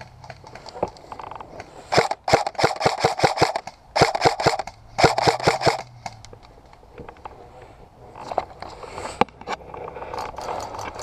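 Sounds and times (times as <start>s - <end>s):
airsoft gun firing: 1.9s - 5.9s.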